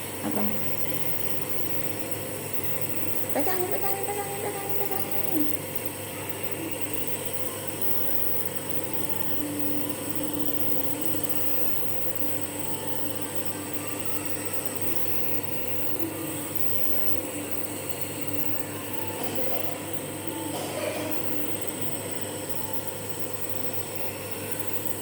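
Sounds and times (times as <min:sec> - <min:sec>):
nebulizer motor hum with hiss: 0:00.0 - 0:25.0.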